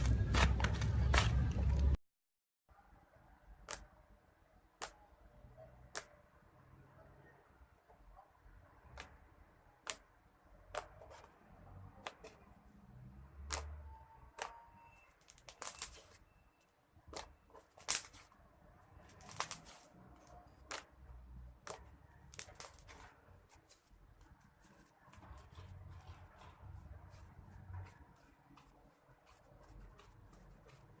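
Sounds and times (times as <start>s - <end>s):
slime crackling: 19.0s - 21.0s.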